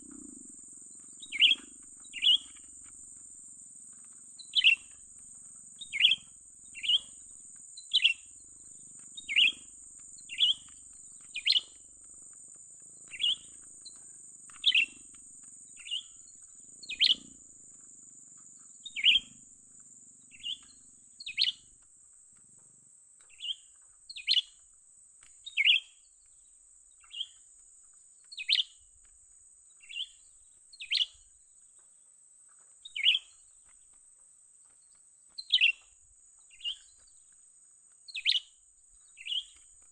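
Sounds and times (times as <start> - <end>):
high-pitched insect buzz: 0.0 - 21.7.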